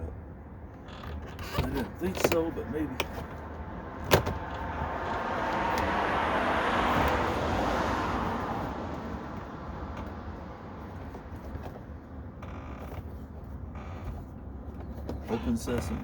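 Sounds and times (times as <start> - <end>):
vehicle passing by: 3.6 - 11.0.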